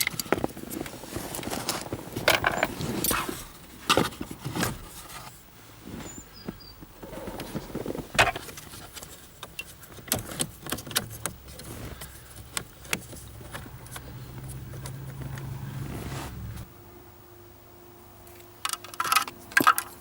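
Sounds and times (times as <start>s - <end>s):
steady low hum: 10.3s - 20.0s.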